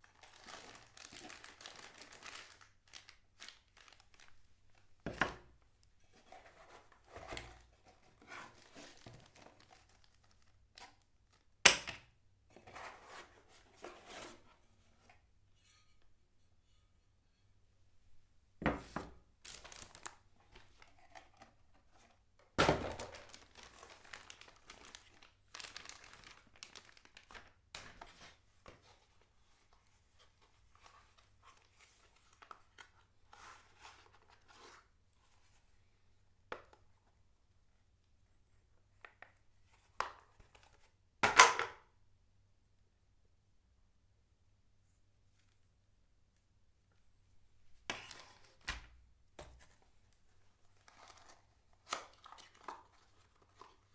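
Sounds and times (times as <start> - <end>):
wrapping crinkling and tearing: 0.0 - 4.9, 8.5 - 11.4, 19.4 - 21.3, 22.6 - 28.1.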